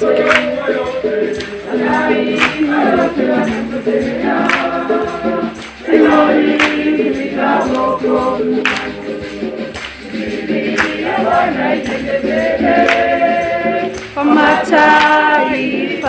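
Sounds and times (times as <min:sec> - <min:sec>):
choir singing a hymn: 0:00.0 - 0:16.0
tambourine struck: 0:00.0 - 0:16.0.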